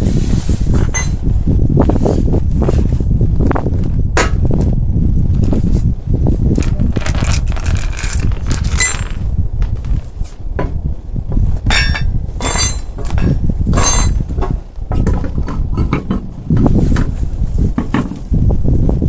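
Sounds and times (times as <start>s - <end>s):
steady low rumble: 0.0s - 19.0s
metal tools clinking and knocking: 0.8s - 1.2s, 7.6s - 9.2s, 11.7s - 16.3s.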